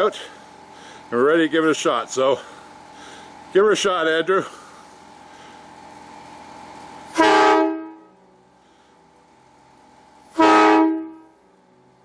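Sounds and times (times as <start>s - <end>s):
train horn chord blasts: 7.1s - 8.2s, 10.3s - 11.5s.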